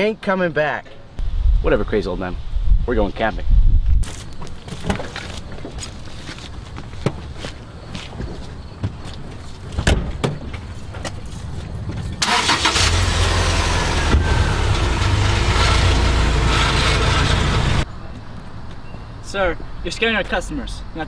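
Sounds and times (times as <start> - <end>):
vehicle engine rumbling: 9.2 - 18.2.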